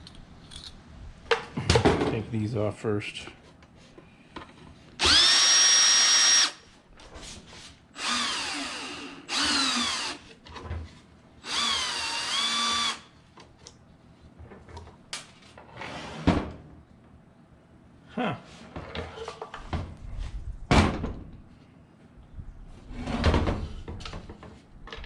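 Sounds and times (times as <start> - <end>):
electric drill whining: 5.0 - 6.6, 8.0 - 10.2, 11.4 - 13.1.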